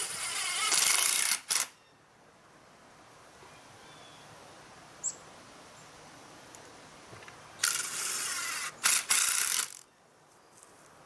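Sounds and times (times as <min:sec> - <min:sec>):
ratcheting mechanism clicking: 0:07.6 - 0:09.8.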